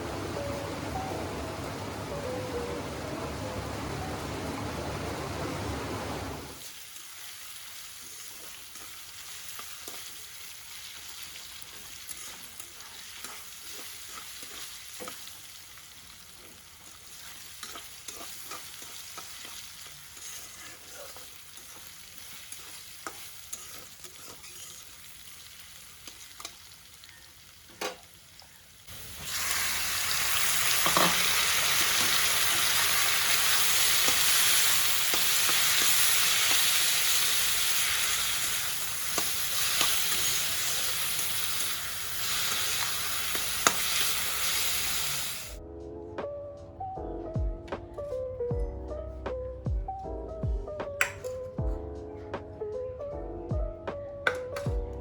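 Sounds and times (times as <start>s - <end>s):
loud steady sizzle: 5.8s - 45.6s
food sizzling in a pan: 6.5s - 45.6s.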